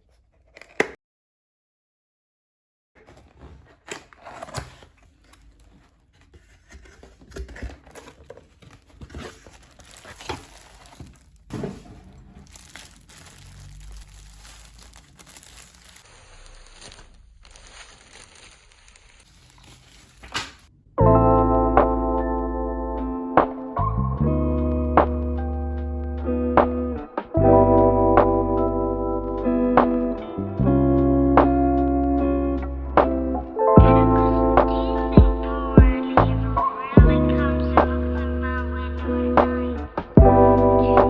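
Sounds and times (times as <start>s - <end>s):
packaging crinkling and tearing: 3.1s - 20.7s.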